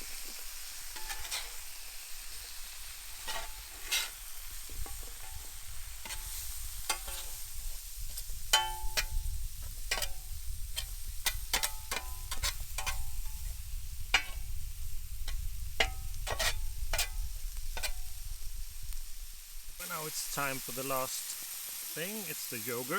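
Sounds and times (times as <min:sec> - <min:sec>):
faint sizzle: 0:00.0 - 0:22.9
utensil scraping and knocking steel pan: 0:01.0 - 0:01.7, 0:03.2 - 0:14.6, 0:15.2 - 0:18.2.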